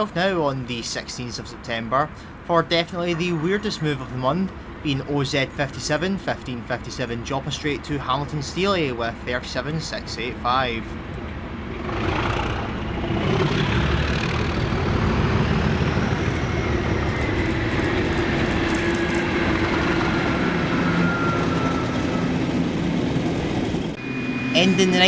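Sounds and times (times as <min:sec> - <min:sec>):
diesel locomotive engine rumble: 0:00.0 - 0:25.0
faint falling whistle: 0:20.3 - 0:22.4.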